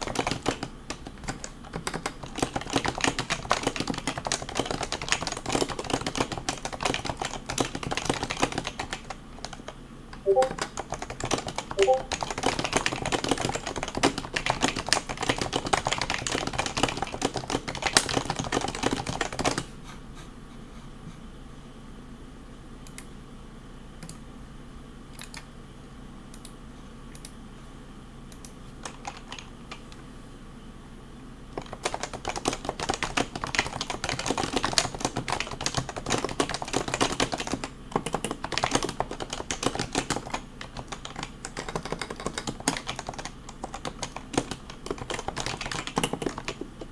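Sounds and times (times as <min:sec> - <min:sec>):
scattered key presses: 0:00.0 - 0:19.6, 0:31.6 - 0:46.9
fast keyboard typing: 0:00.0 - 0:19.7, 0:28.8 - 0:29.8, 0:31.5 - 0:46.9.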